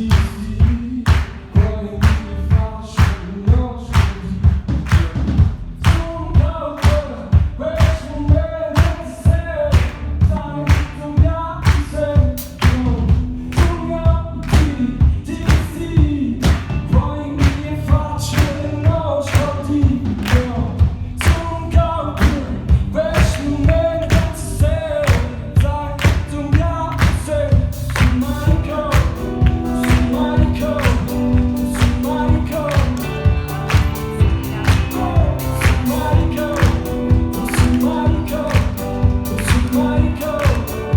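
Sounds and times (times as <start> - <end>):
man singing: 0.0 - 40.9
steady drum beat: 0.0 - 40.9
band playing: 26.6 - 40.9.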